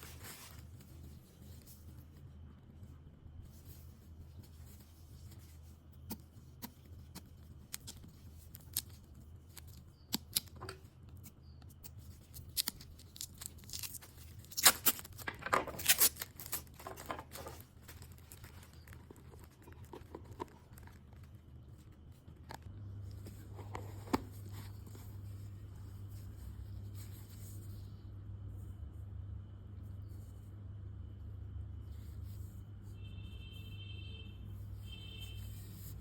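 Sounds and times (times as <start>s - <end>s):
packaging tearing and rustling: 12.1s - 21.3s.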